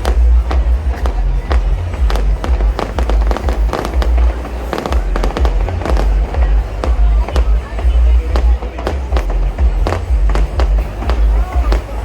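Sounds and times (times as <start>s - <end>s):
deep rumble of booms: 0.0s - 12.0s
fireworks bangs and crackles: 0.0s - 12.0s.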